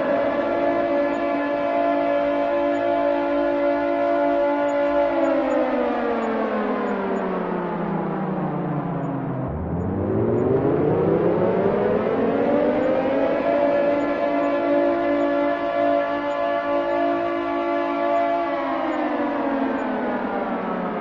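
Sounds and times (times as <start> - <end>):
air raid siren wailing: 0.0 - 21.0.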